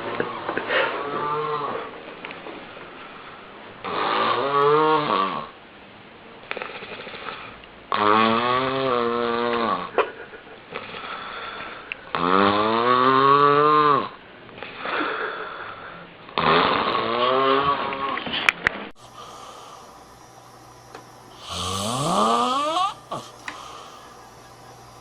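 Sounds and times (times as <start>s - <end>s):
breathy breaths: 10.7s - 12.0s, 19.0s - 25.0s
person snoring loudly: 19.0s - 25.0s.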